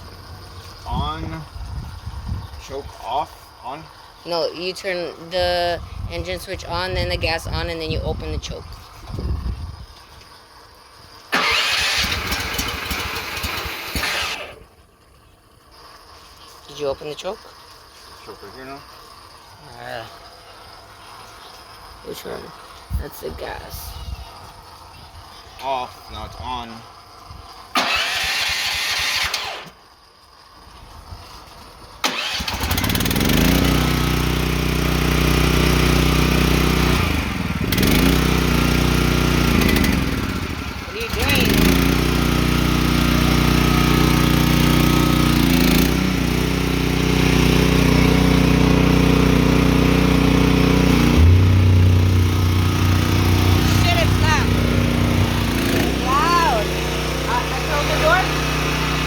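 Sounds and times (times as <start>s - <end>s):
engine cranking: 11.3s - 16.1s, 27.7s - 29.9s, 32.0s - 34.6s, 35.4s - 59.0s.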